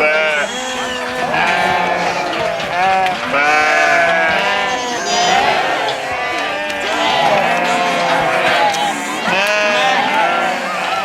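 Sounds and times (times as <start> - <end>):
sheep bleating: 0.0 - 11.0.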